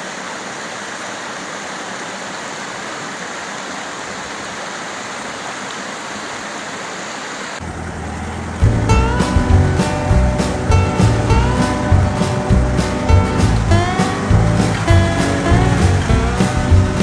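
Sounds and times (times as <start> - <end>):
waterfall rushing: 0.0 - 17.0
music: 8.6 - 17.0.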